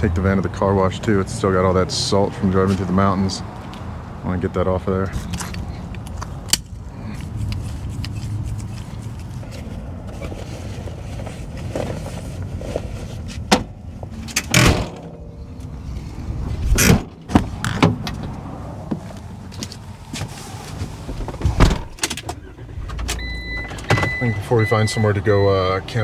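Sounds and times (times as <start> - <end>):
low rumble of traffic: 0.0 - 26.0
van doors clunking shut: 13.5 - 15.4, 16.7 - 19.0, 20.9 - 24.4.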